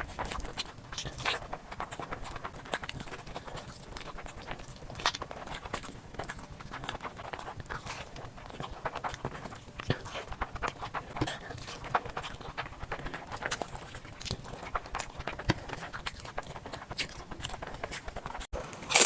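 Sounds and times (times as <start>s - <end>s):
person chewing and eating: 0.0s - 19.0s.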